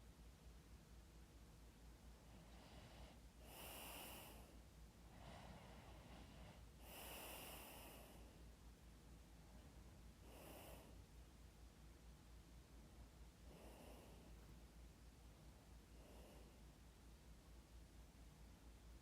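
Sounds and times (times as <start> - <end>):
person breathing softly: 2.1 - 8.5, 9.4 - 11.2, 13.4 - 14.6, 15.7 - 16.9.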